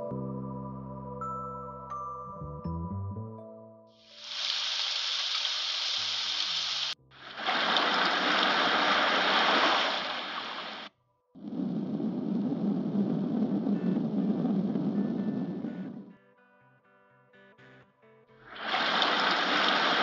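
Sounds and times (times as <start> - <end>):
rushing water-like noise: 4.0 - 10.9, 18.5 - 20.0.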